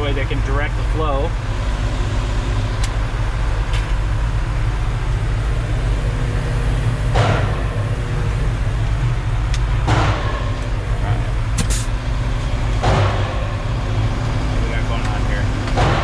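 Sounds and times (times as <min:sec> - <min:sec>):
truck diesel engine running: 0:00.0 - 0:16.0
air hissing: 0:01.3 - 0:15.9.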